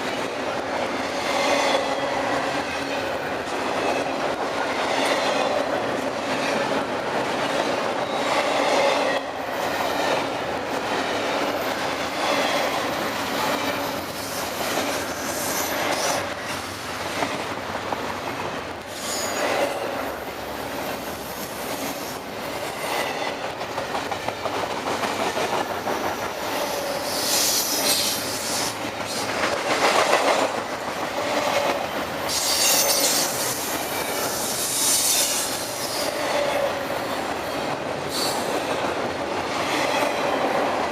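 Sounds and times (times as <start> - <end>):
clickety-clack over rail joints: 0.0 - 40.9
train wheels rumbling on rail: 0.0 - 40.9
high-pitched wheel squeal: 32.3 - 33.3.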